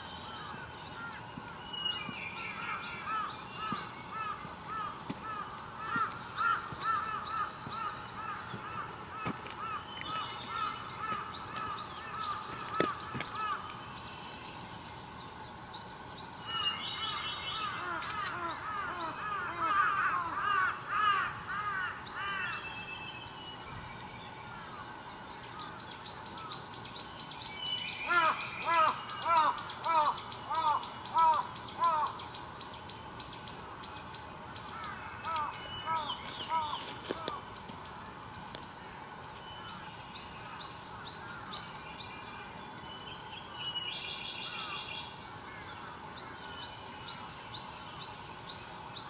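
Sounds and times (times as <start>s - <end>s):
birds with high-pitched notes: 22.1s - 49.0s.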